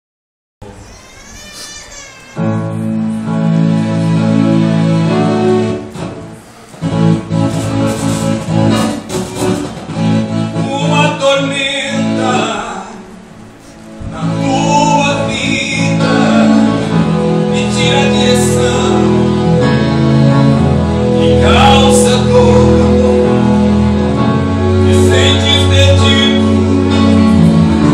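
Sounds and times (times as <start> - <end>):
string instrument accompaniment: 2.4 - 27.9
person singing: 14.0 - 27.9.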